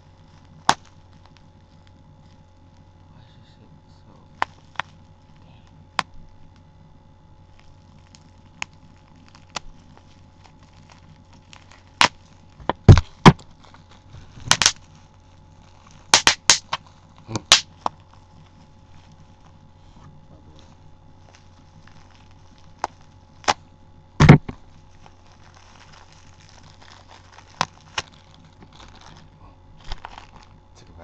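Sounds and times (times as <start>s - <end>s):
packaging being torn open: 7.6s - 18.0s, 24.5s - 30.6s.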